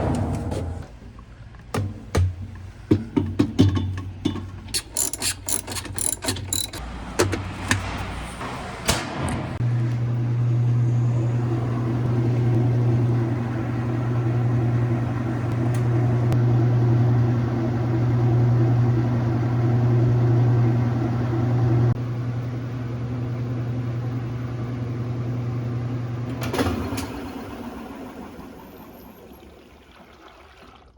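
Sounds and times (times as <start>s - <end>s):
washing machine clicks and knocks: 1.7s - 4.6s
washing machine motor humming: 9.4s - 30.9s.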